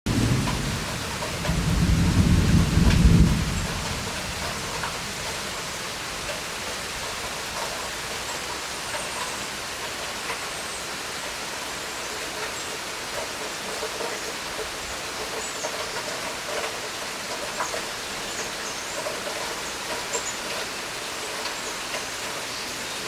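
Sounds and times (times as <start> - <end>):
low rumble of thunder: 0.1 - 5.7
steady rain falling: 0.1 - 23.0.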